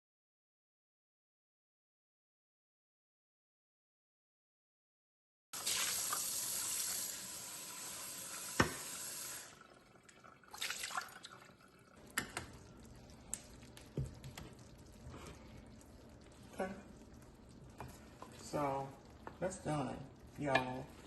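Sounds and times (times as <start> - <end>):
kitchen tap running: 5.6 - 20.9.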